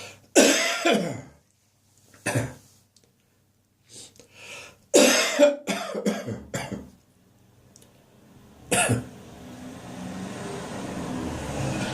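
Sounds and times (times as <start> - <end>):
man hacking cough: 0.4 - 1.4, 2.2 - 2.6, 5.0 - 7.0, 8.7 - 9.1
man breathing in: 3.8 - 4.8.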